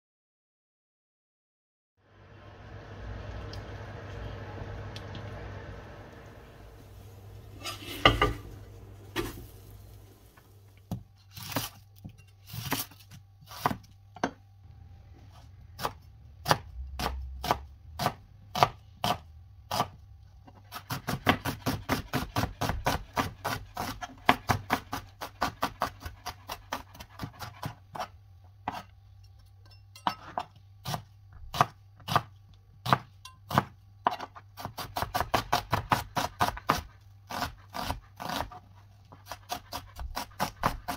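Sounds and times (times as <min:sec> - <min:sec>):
knife chopping on cutting board: 0:07.6 - 0:08.5, 0:10.9 - 0:14.4, 0:15.8 - 0:28.9, 0:30.0 - 0:40.9.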